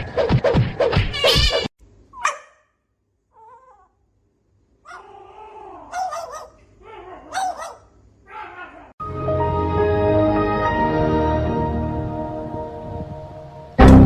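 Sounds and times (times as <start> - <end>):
dog whining and yelping: 4.9 - 7.8.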